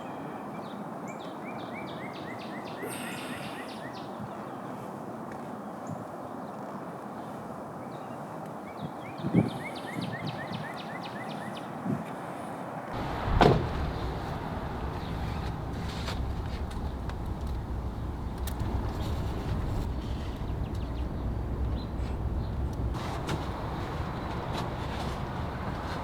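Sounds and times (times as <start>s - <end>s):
bird chirping: 0.0s - 4.6s, 13.0s - 25.8s
loud sharp thud: 13.0s - 15.5s
dull thumps: 13.0s - 20.9s
low rumble: 13.0s - 26.0s.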